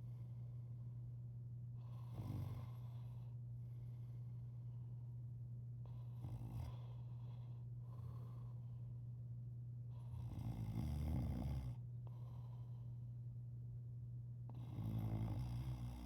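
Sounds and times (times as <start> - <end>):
quiet breathing: 0.0 - 16.0
man snoring: 1.9 - 2.9, 10.1 - 11.8, 14.5 - 16.0.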